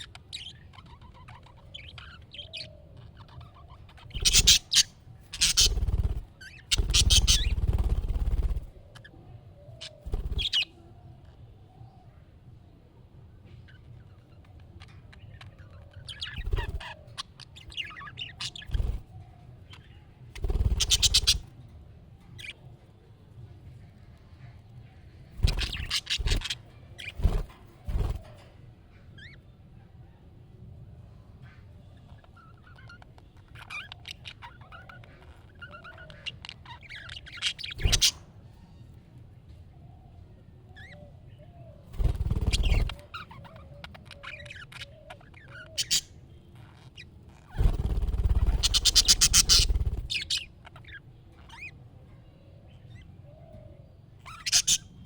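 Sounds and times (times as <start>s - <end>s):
budgerigars chirping and warbling: 0.0s - 9.1s, 9.8s - 11.4s, 13.7s - 19.1s, 19.7s - 21.5s, 25.2s - 28.4s, 32.0s - 38.3s, 41.9s - 51.8s, 52.7s - 55.0s
budgerigar chattering: 4.1s - 7.8s, 20.5s - 21.4s, 42.2s - 46.2s, 48.3s - 51.0s, 54.3s - 55.0s.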